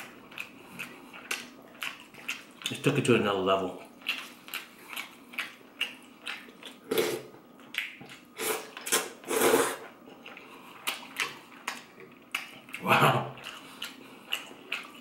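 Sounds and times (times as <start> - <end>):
chewing: 0.0 - 9.2, 9.8 - 15.0
slurping soup: 6.8 - 7.3, 8.3 - 10.0.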